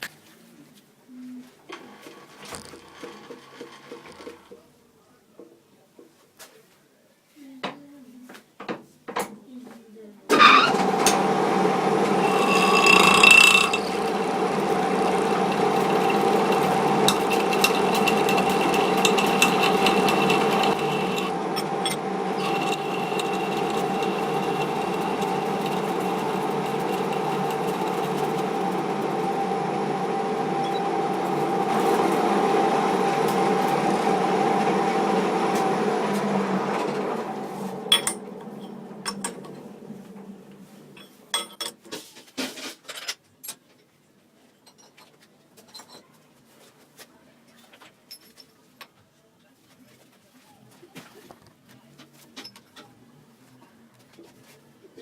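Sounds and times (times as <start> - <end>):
metal lathe whining: 10.3 - 41.2.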